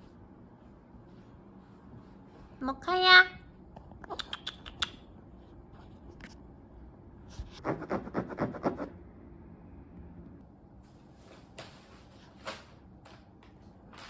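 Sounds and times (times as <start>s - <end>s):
scratchy rubbing strokes: 7.4s - 8.9s.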